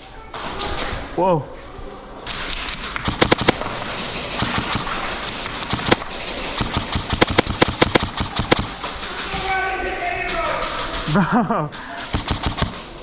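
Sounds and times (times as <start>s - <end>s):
airsoft gun shots: 3.0s - 3.7s, 4.4s - 8.8s, 12.1s - 12.8s.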